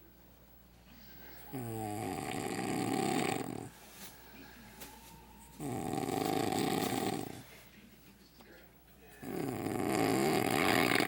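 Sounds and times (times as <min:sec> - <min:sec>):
man snoring: 0:01.5 - 0:03.7, 0:05.6 - 0:07.3, 0:09.2 - 0:11.0.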